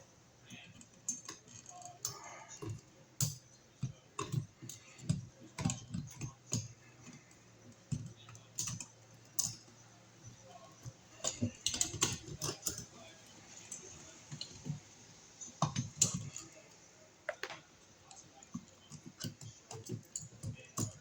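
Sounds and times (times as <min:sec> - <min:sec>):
hand tools clicking and tapping: 0:00.0 - 0:21.0.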